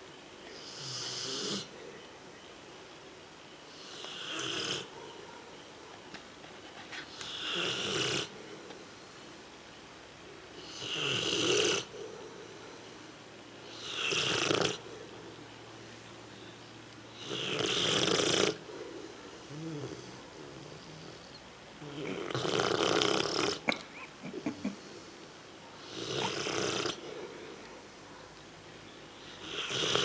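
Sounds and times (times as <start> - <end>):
dog snoring: 0.5 - 1.7, 3.7 - 4.9, 7.1 - 8.4, 10.6 - 12.2, 13.7 - 14.8, 17.2 - 18.7, 19.5 - 23.7, 25.8 - 27.2, 29.3 - 30.0.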